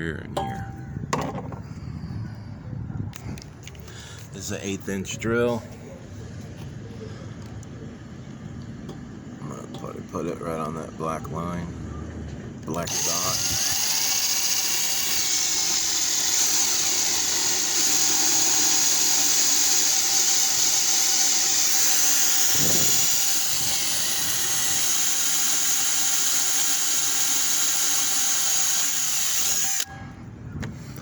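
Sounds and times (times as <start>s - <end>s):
power drill whining: 12.8s - 29.9s.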